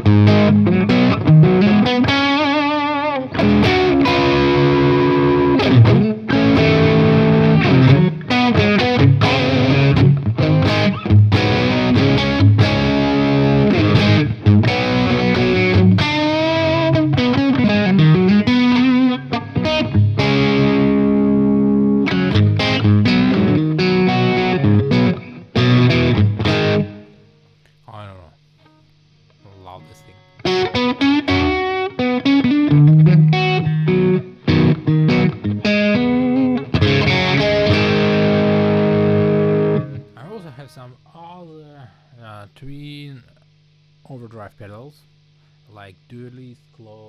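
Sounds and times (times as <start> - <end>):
overdriven electric guitar: 0.0 - 27.2, 30.1 - 40.2.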